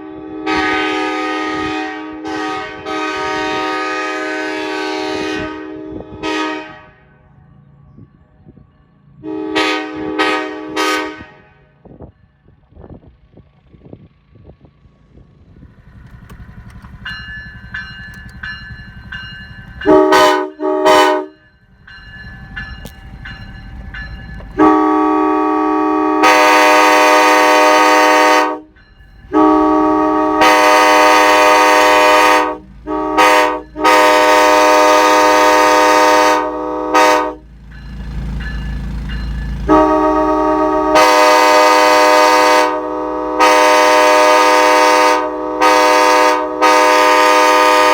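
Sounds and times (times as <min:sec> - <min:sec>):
locomotive air horn chord: 0:00.0 - 0:07.2, 0:09.2 - 0:11.8, 0:19.8 - 0:21.4, 0:24.6 - 0:37.4, 0:39.6 - 0:47.9.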